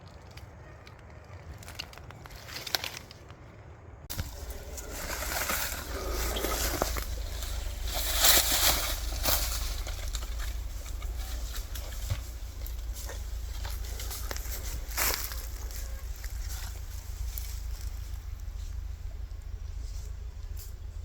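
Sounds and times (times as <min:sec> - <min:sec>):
twigs crackling and snapping: 0:00.0 - 0:03.4, 0:04.1 - 0:21.0
steady low rumble: 0:03.6 - 0:21.0
footsteps through leaf litter: 0:04.1 - 0:19.0.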